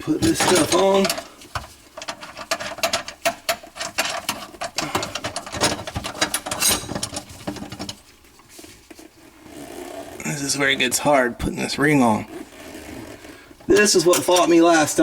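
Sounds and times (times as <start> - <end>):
metallic clicks and clinks: 2.0 - 7.3.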